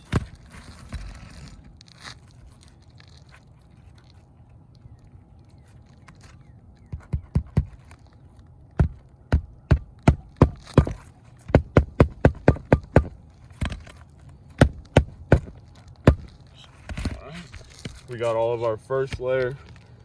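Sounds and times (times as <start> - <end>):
hammer striking roofing nails: 8.8 - 14.0, 14.6 - 16.3.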